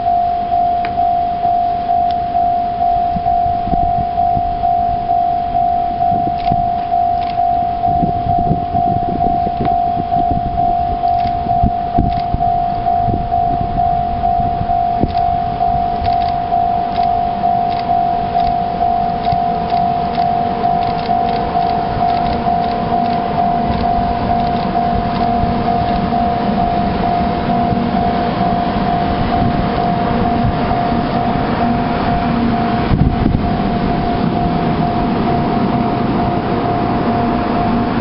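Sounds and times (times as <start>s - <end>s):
level-crossing bell ringing: 0.0s - 38.0s
low rumble: 0.0s - 38.0s.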